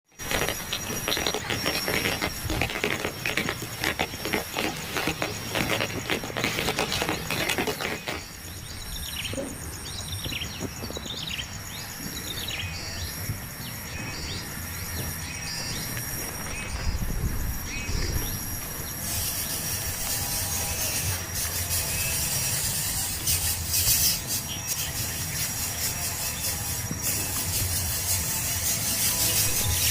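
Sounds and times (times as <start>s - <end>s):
bird chirping: 0.1s - 29.9s.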